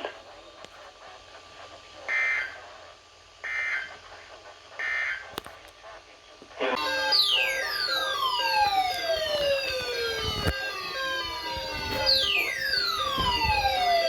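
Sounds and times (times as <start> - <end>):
falling siren alert tone: 6.8 - 14.0
pulsing beeps: 6.8 - 14.0.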